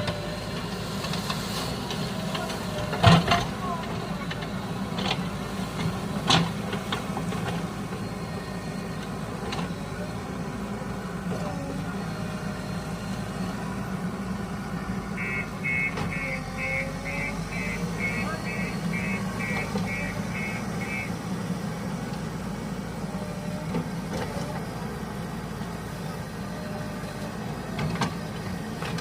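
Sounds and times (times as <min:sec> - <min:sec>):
diesel engine idling: 0:00.0 - 0:29.0
reversing alarm beeping: 0:15.1 - 0:21.3.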